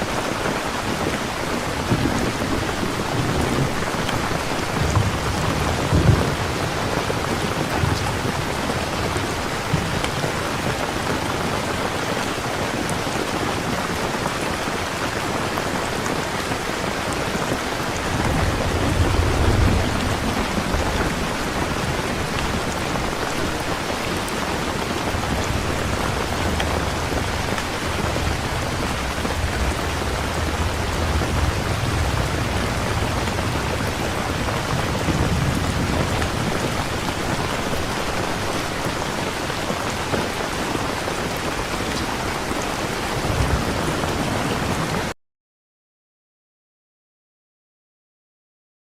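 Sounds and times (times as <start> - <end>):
heavy rain falling: 0.0 - 45.2
low rolling thunder: 0.3 - 11.3, 16.5 - 40.2, 43.1 - 45.1.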